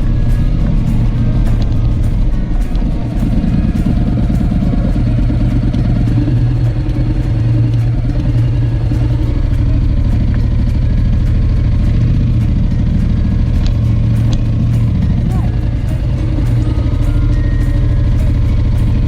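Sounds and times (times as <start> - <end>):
motorcycle engine droning: 0.0 - 19.0.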